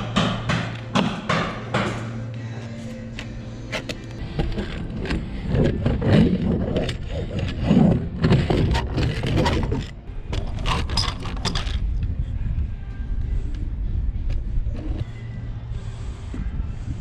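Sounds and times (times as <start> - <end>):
steady low rumble: 1.6 - 17.0
scraping with knocks and clatters: 2.8 - 11.9.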